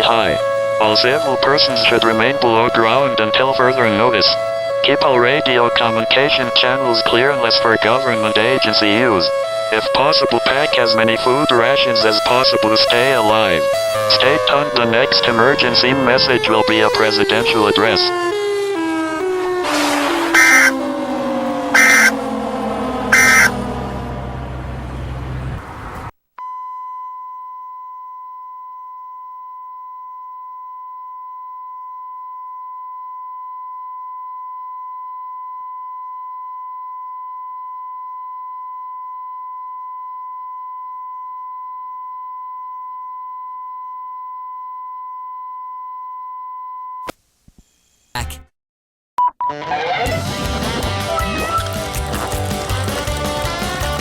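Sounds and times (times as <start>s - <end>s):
loud harsh sound: 19.4s - 25.1s
short bursts of sound: 19.6s - 24.2s
steady electronic alert tone: 20.3s - 24.4s.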